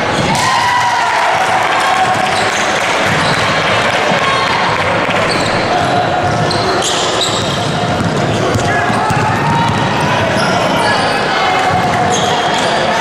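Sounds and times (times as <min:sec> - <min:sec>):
basketball bouncing on gym floor: 0:03.0 - 0:04.2, 0:04.8 - 0:10.8.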